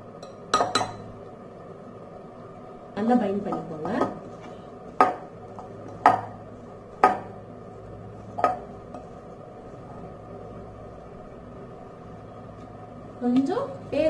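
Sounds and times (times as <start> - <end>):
utensil knocking on mixing bowl: 5.0 - 5.3, 6.0 - 6.4, 7.0 - 7.3, 8.4 - 8.7.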